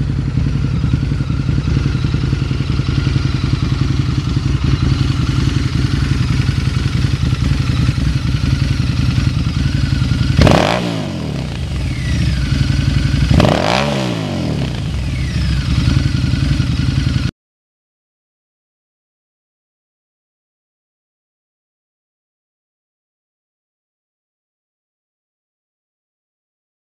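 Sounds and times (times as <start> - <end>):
motorcycle engine idling and revving: 0.0 - 17.3.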